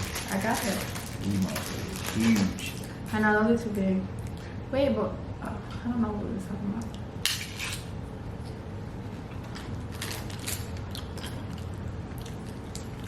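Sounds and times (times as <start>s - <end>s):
wrapper crinkling and crackling: 0.0s - 3.0s
steady low hum: 0.0s - 13.0s.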